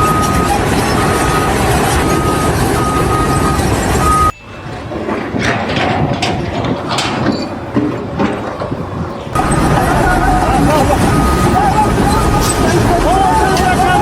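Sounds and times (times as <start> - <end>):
reversing alarm beeping: 0.0 - 5.1, 9.4 - 14.0
heavy machine running: 0.0 - 14.0.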